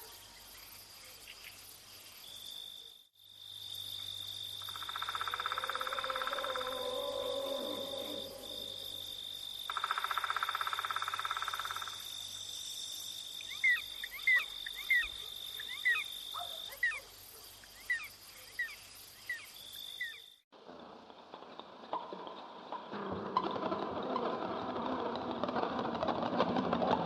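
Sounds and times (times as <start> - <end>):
crickets trilling: 0.0 - 20.4
rapid rattling animal call: 4.6 - 12.0.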